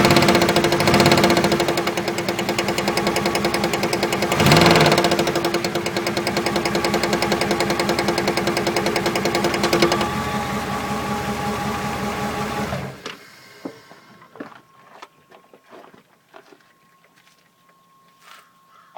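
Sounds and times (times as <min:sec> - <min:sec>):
engine knocking: 0:00.0 - 0:12.8
engine running: 0:00.0 - 0:14.6.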